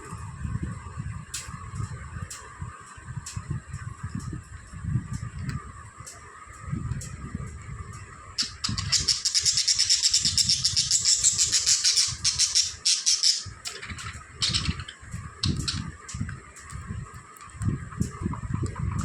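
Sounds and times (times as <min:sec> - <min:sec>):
budgerigars chirping: 0:08.4 - 0:15.8.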